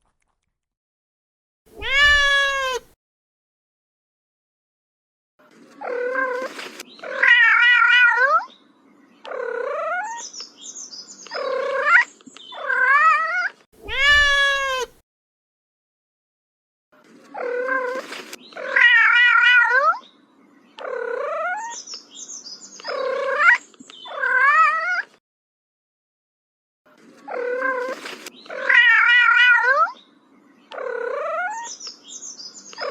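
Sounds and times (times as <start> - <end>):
cat meowing and yowling: 1.8 - 2.9, 7.1 - 8.5, 12.6 - 15.0, 18.7 - 20.0, 23.3 - 25.1, 28.6 - 30.0.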